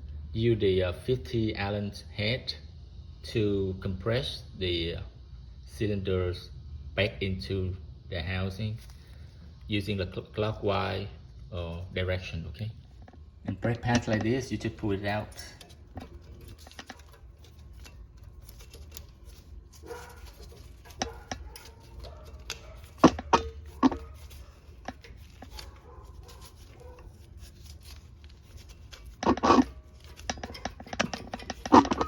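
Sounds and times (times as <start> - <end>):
brake pad metal clicks and scrapes: 12.8 - 32.0
short metal rattle: 12.9 - 32.0.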